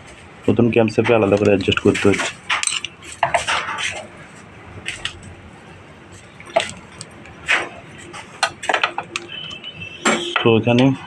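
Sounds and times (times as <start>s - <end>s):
metal tools clinking on engine: 1.3s - 4.1s.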